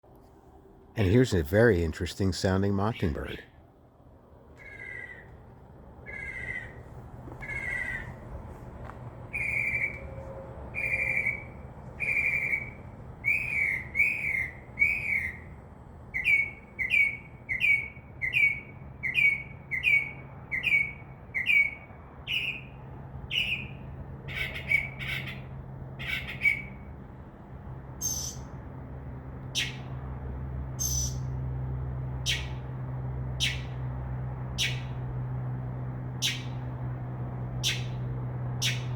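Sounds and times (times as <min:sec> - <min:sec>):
mockingbird singing chirped notes: 0:10.8 - 0:15.5, 0:16.1 - 0:22.7, 0:28.0 - 0:28.5, 0:29.5 - 0:29.9, 0:30.8 - 0:31.3, 0:33.4 - 0:33.7, 0:34.6 - 0:35.0, 0:36.2 - 0:36.6, 0:37.6 - 0:38.0, 0:38.6 - 0:38.9.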